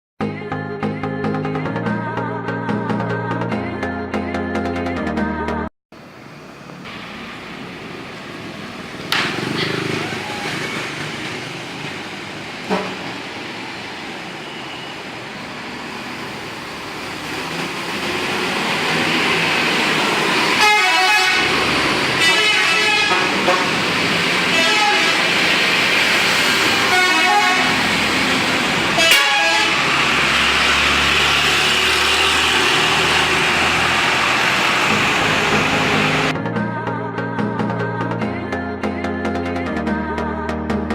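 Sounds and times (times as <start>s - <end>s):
road traffic noise: 5.9s - 36.4s
large vehicle passing close: 6.0s - 20.6s, 21.2s - 22.3s, 23.2s - 36.3s
bus engine hum: 6.0s - 36.4s
bus horn melodic toots: 12.6s - 13.1s, 20.5s - 25.4s, 26.7s - 28.1s, 28.9s - 30.1s.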